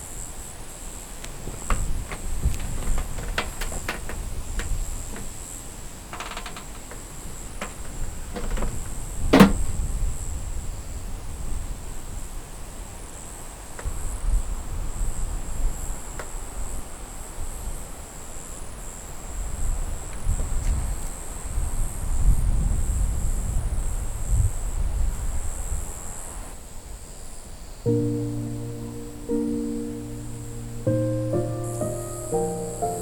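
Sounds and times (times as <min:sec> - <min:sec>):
crickets trilling: 0:00.0 - 0:09.9
wind buffeting microphone: 0:01.2 - 0:13.0, 0:19.4 - 0:26.0.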